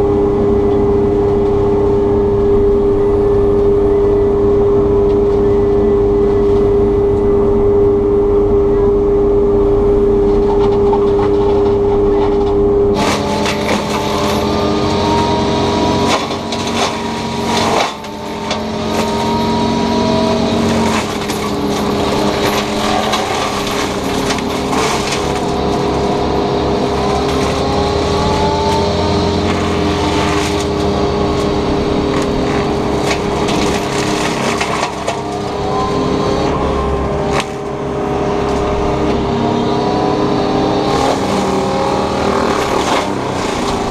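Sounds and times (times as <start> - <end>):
excavator diesel engine and hydraulics: 0.0 - 43.9
mulching head shredding brush: 9.0 - 43.9
wood cracking: 13.0 - 36.0, 37.2 - 38.8, 40.9 - 43.9.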